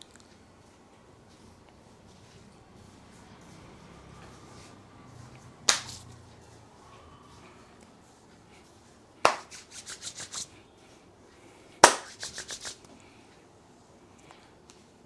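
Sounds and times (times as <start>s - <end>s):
massage cracks and clicks: 5.7s - 6.0s.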